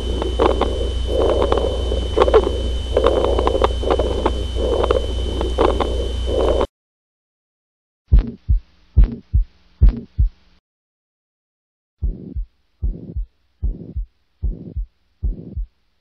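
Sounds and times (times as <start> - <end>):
steady hum with clicks: 0.0 - 6.7, 8.1 - 10.6, 12.0 - 16.0
heartbeat lub-dub: 8.1 - 10.5, 12.0 - 15.8.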